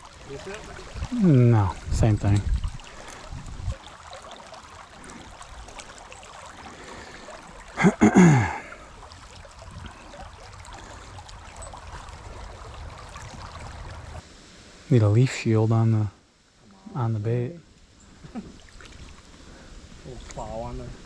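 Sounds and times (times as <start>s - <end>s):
creek water running: 0.0s - 21.0s
person exclaiming: 1.1s - 1.8s.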